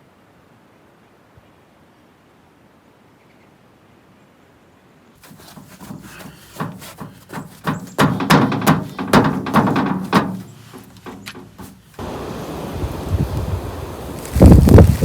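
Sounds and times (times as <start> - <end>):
knocks and clatters: 5.2 - 12.0.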